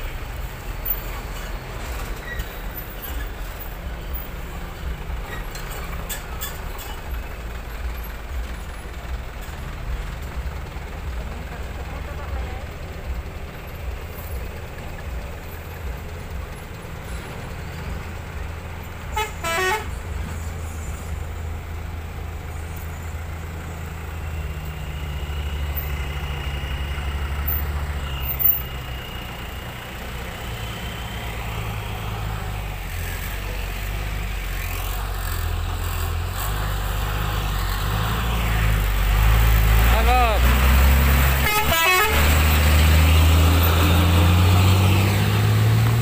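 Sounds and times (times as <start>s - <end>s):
truck diesel engines rumbling: 0.0s - 46.0s
horn toot: 19.1s - 20.0s, 41.4s - 42.8s.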